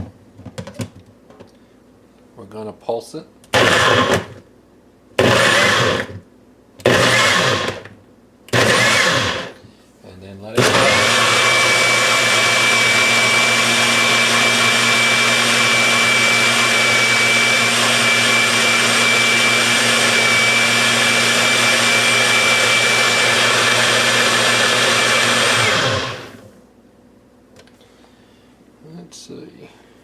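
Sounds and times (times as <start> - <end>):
blender motor whining: 3.5 - 4.4, 5.2 - 6.2, 6.8 - 7.9, 8.5 - 9.6, 10.6 - 26.6.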